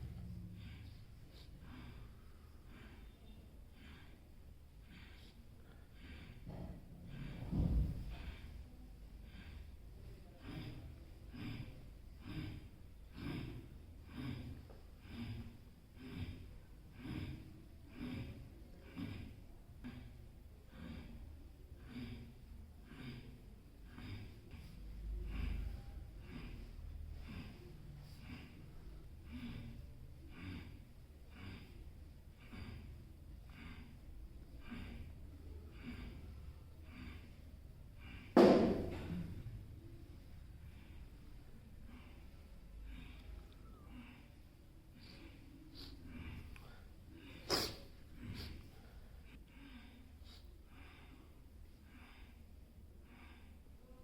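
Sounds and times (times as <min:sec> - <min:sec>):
forceful breaths through nose: 0:00.0 - 0:19.2.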